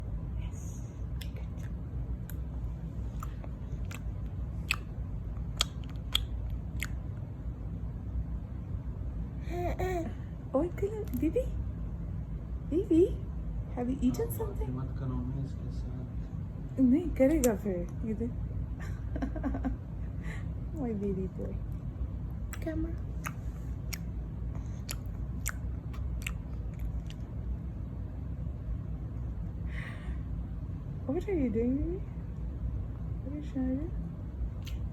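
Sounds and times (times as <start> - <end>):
low steady hum: 0.0 - 34.9
baby smacking lips: 1.2 - 7.0, 22.5 - 27.2, 34.6 - 34.9.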